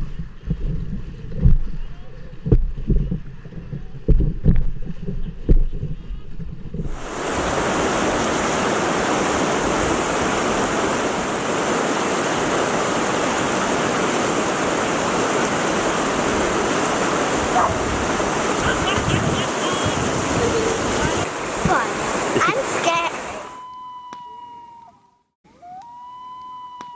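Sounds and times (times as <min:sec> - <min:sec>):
low thumps: 0:00.0 - 0:07.6
white water rushing: 0:06.9 - 0:23.6.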